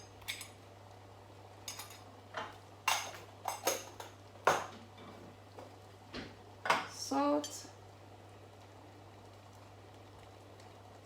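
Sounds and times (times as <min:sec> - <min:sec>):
faint steady hum: 0:00.0 - 0:11.0
cookware clinking: 0:01.7 - 0:04.7.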